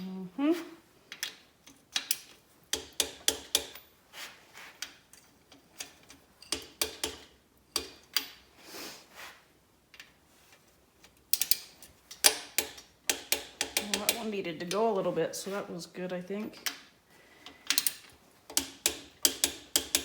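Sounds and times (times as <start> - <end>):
wrench ratcheting metal clicks: 17.7 - 20.0.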